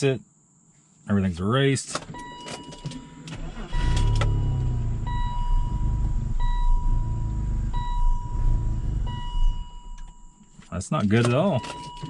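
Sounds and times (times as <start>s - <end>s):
car engine running unevenly: 3.3s - 10.3s
beep tone: 3.8s - 10.5s.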